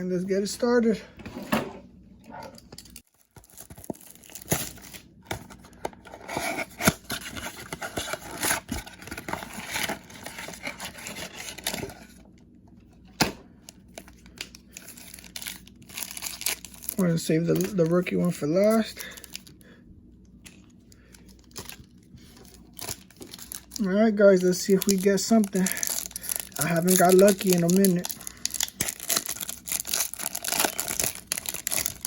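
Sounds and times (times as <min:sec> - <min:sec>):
wrapping torn and crinkled: 0:02.9 - 0:12.3, 0:13.7 - 0:19.6, 0:20.5 - 0:32.0.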